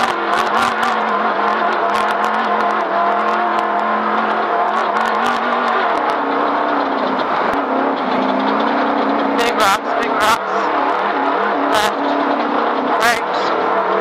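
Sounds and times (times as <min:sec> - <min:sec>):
vehicle engine running: 0:00.0 - 0:14.0
vehicle knocks and rattles: 0:00.0 - 0:14.0.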